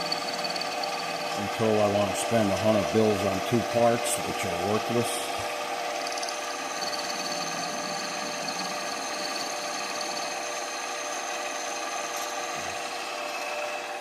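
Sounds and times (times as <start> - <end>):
lathe motor whine with cutting: 0.0 - 14.0.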